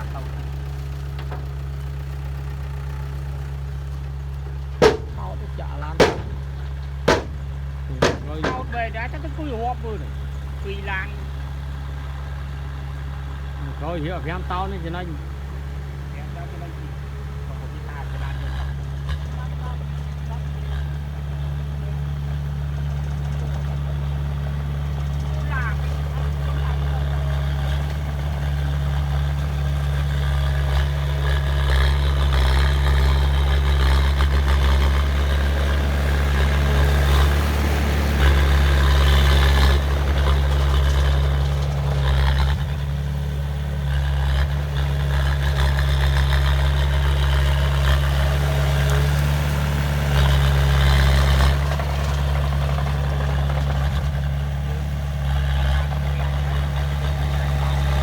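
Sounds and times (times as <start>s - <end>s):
heavy diesel engine running: 0.0s - 58.0s.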